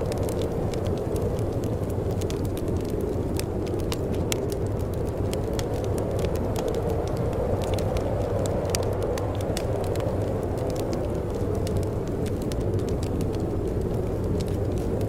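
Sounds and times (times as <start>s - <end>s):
wood fire crackling and popping: 0.0s - 15.0s.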